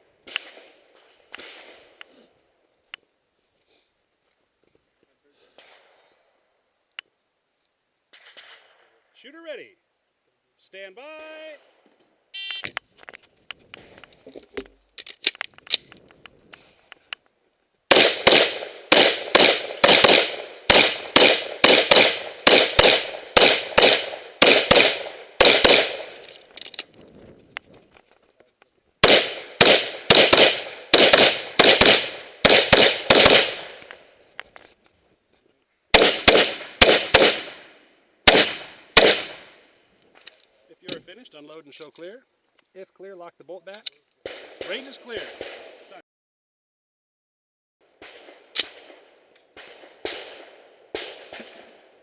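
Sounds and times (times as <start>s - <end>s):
electronic shot timer beep: 12.4s - 12.7s
rifle shots: 17.9s - 26.2s, 29.0s - 33.9s, 35.9s - 39.6s, 44.2s - 46.0s, 48.0s - 52.0s.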